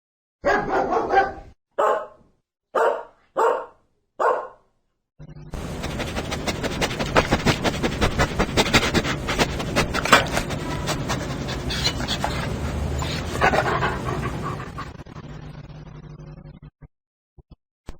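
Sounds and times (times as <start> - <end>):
dog panting: 5.6 - 15.0.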